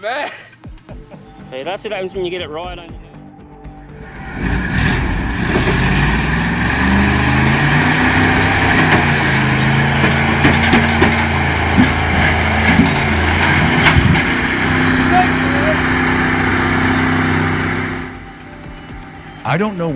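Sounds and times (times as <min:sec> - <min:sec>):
vehicle engine running: 0:03.7 - 0:19.9
sharp knocks: 0:08.0 - 0:14.8.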